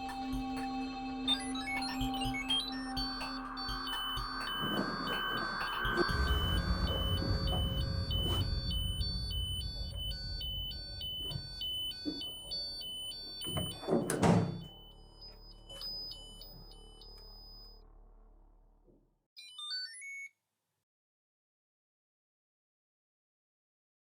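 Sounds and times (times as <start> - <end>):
electronic alarm beeps: 0.0 - 17.8
low rumble: 2.0 - 13.2.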